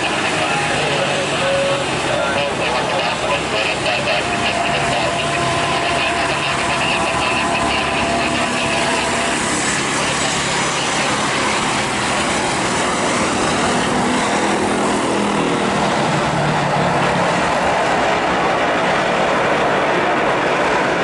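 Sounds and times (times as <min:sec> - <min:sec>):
voices in background: 0:00.0 - 0:13.0
jet airliner engine rumble: 0:00.0 - 0:21.0.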